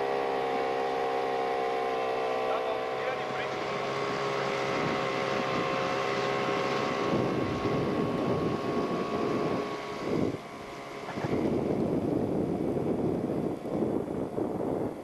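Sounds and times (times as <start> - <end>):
outboard motor running: 0.0 - 15.0
water noise: 0.0 - 15.0
wind noise: 3.3 - 15.0.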